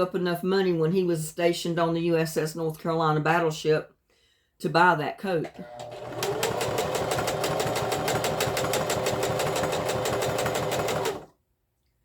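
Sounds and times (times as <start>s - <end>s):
sewing machine stitching: 5.5s - 11.3s.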